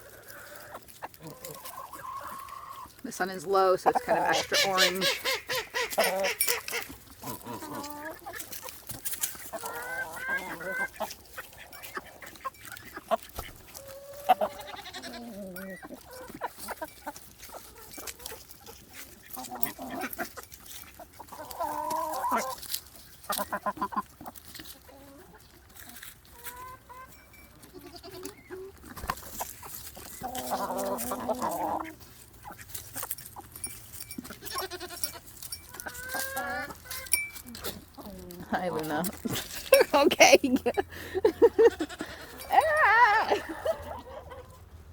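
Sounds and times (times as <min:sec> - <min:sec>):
chickens clucking: 0:00.0 - 0:44.9
goat bleats: 0:14.2 - 0:15.9, 0:27.6 - 0:28.4, 0:34.4 - 0:36.9, 0:41.5 - 0:43.9.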